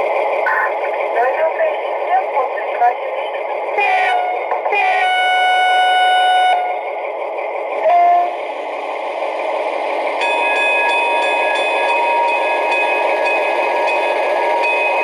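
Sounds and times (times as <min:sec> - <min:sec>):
model diesel engine sound: 0:00.0 - 0:15.0
horn-like tone: 0:03.8 - 0:06.8
steady high tone: 0:08.0 - 0:15.0.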